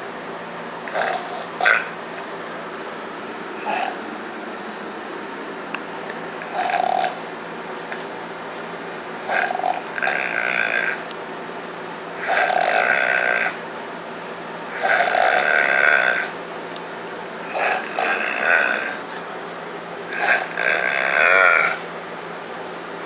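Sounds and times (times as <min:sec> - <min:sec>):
man snoring: 0:00.9 - 0:01.9, 0:03.6 - 0:04.0, 0:06.4 - 0:07.2, 0:09.2 - 0:11.1, 0:12.2 - 0:13.6, 0:14.7 - 0:16.4, 0:17.5 - 0:19.1, 0:20.1 - 0:21.8.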